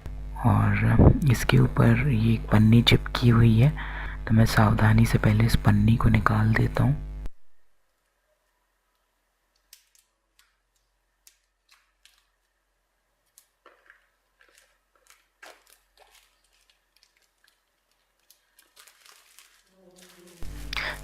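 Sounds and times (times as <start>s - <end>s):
plastic film crinkling and clicking: 8.9s - 21.0s.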